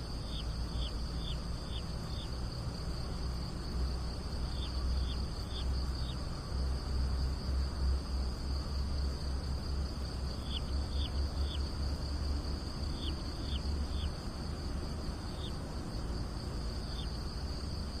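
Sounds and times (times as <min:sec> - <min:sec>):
insect high trill: 0:08.7 - 0:18.0.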